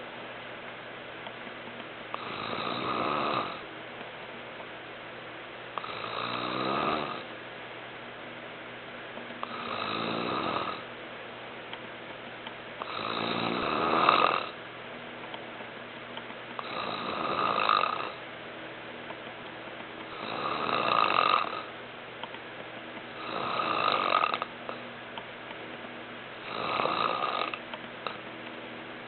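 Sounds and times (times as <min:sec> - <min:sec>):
man snoring: 0:02.2 - 0:03.6, 0:05.8 - 0:07.3, 0:09.4 - 0:10.8, 0:12.8 - 0:14.6, 0:16.6 - 0:18.2, 0:20.1 - 0:21.7, 0:23.2 - 0:24.5, 0:26.4 - 0:27.6.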